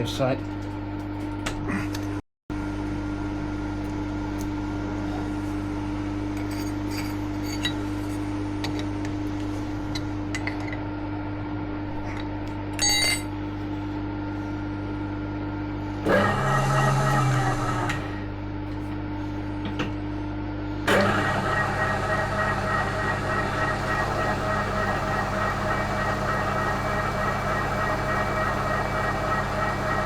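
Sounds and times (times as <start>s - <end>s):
ringing metallic tone: 12.8s - 13.3s
milling machine running: 16.0s - 18.3s, 20.8s - 30.0s.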